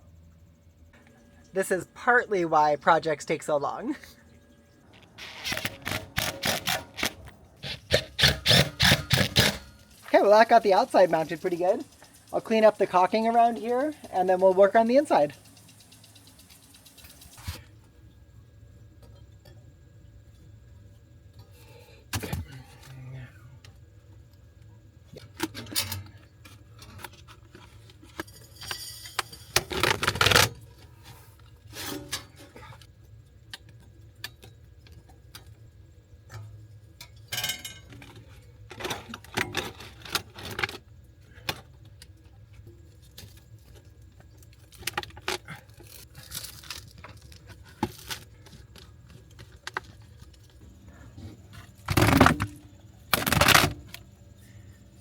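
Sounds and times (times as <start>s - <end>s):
tools and parts clinking: 25.4s - 30.5s, 36.3s - 40.8s.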